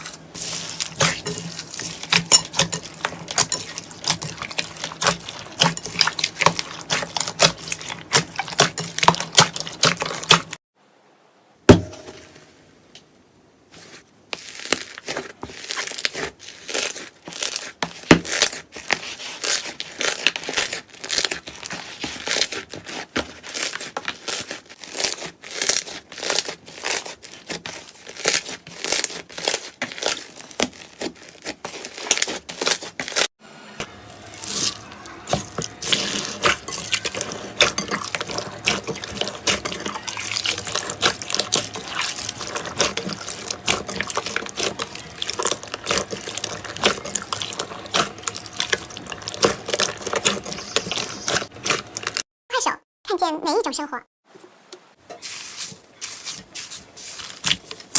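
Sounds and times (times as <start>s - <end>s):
slime crackling and popping: 14.4s - 33.3s, 35.6s - 52.2s.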